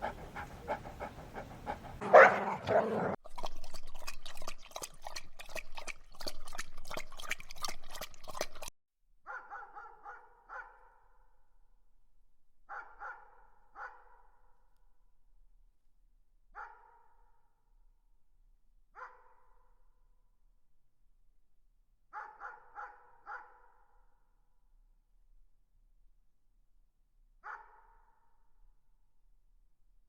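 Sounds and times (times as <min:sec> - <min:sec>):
dog barking: 0:00.0 - 0:03.2, 0:09.3 - 0:10.9, 0:12.7 - 0:14.2, 0:16.6 - 0:17.0, 0:19.0 - 0:19.3, 0:22.2 - 0:23.6, 0:27.4 - 0:27.9
dog high yips: 0:27.5 - 0:27.7.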